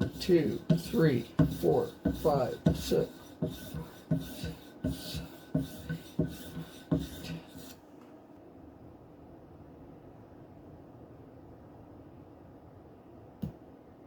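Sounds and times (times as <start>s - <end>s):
knife scraping on strop: 0.0s - 7.8s.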